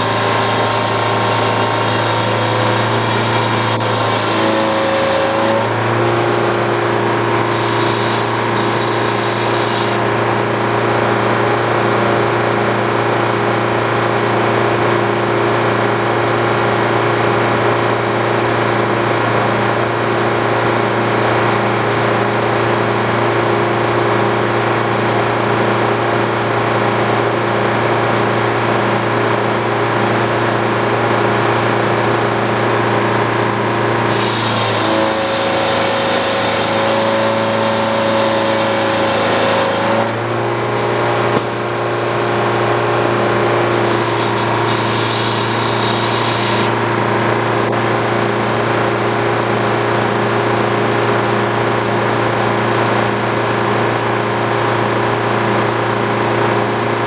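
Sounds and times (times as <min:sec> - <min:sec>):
sawmill machine hum: 0:00.0 - 0:12.6, 0:31.4 - 0:48.5.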